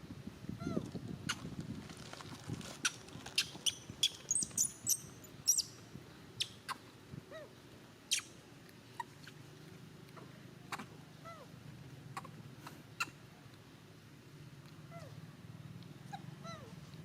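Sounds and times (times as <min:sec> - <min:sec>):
animal squeaks and chirps: 0:02.8 - 0:05.8, 0:06.4 - 0:06.8, 0:08.1 - 0:08.3.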